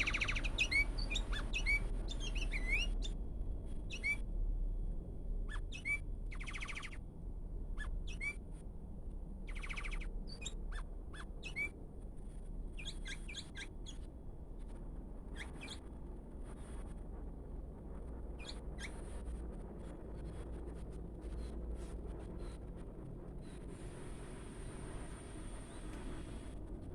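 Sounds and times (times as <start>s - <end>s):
bird chirping: 0.0s - 3.2s, 3.8s - 4.2s, 5.5s - 7.0s, 7.8s - 8.4s, 9.4s - 11.8s, 12.7s - 15.9s, 18.3s - 20.4s
low steady hum: 0.0s - 26.9s.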